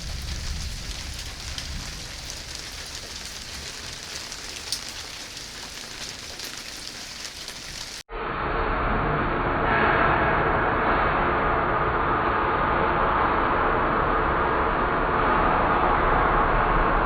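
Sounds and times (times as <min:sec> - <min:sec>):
steady rain falling: 0:00.0 - 0:08.0.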